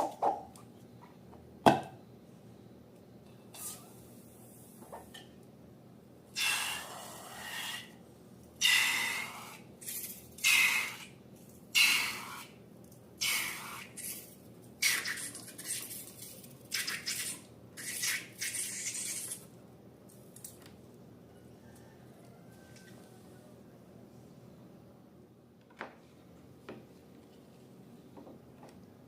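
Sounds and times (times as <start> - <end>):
balloons hissing and squelching: 16.7 - 19.4.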